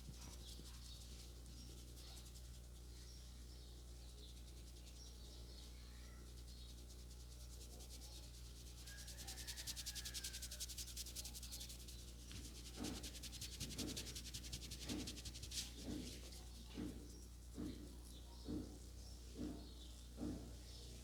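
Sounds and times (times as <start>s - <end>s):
hands rubbing hair and scalp: 7.6s - 17.8s.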